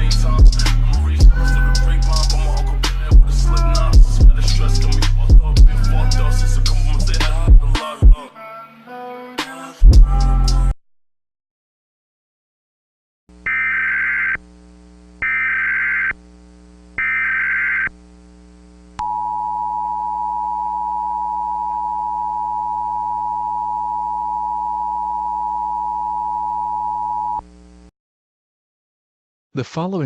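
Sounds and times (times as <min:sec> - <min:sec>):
low steady hum: 0:13.4 - 0:27.9
two-tone data warbling bursts: 0:17.0 - 0:17.9.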